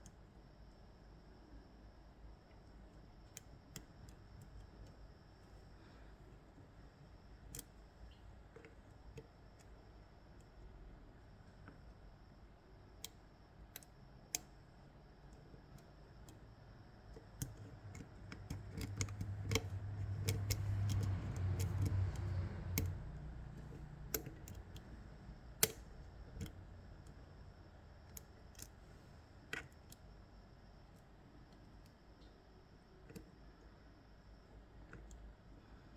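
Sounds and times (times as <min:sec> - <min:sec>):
lock picks clicking: 0:17.3 - 0:27.2.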